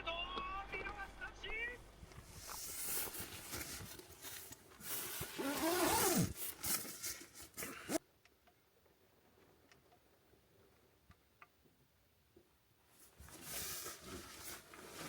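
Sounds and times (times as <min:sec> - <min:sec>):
bedding and clothing rustling: 0:01.8 - 0:08.0, 0:12.9 - 0:15.0.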